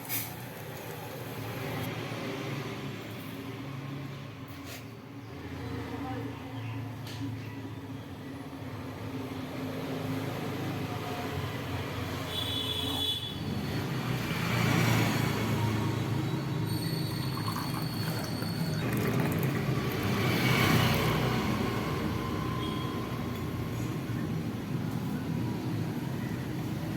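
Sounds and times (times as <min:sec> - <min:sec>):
tea being poured: 0:00.0 - 0:01.7, 0:16.7 - 0:21.3.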